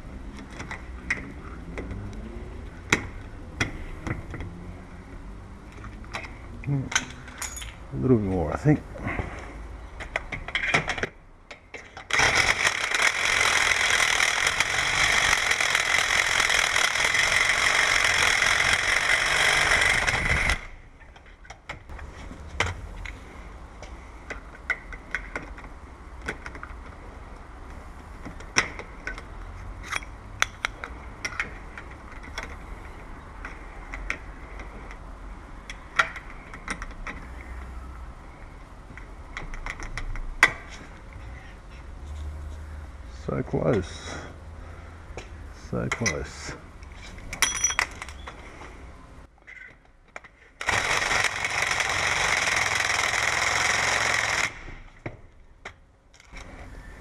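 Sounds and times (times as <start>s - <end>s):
metal parts clicking: 5.7s - 7.8s
power drill boring metal: 12.1s - 20.7s, 50.6s - 54.6s.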